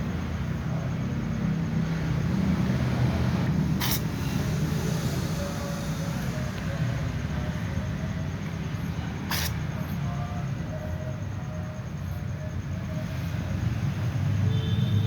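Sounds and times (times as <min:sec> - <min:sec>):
steady low hum: 0:00.0 - 0:14.2
cat sneezing: 0:03.7 - 0:04.5, 0:09.2 - 0:09.9.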